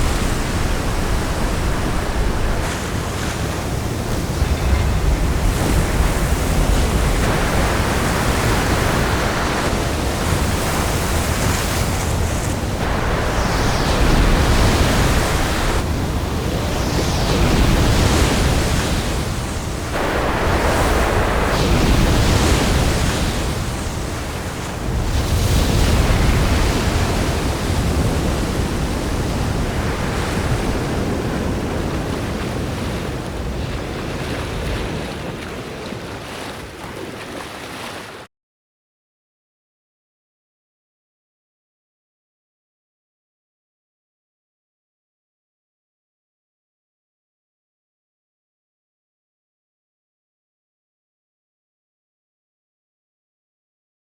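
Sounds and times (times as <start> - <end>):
ocean waves crashing: 0.0 - 38.3
wind: 0.0 - 38.3.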